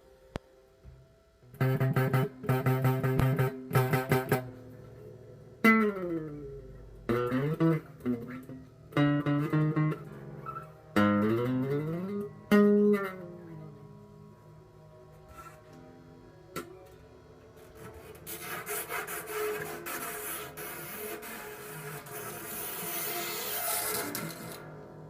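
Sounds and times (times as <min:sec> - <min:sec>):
bass guitar notes: 0:01.5 - 0:15.0.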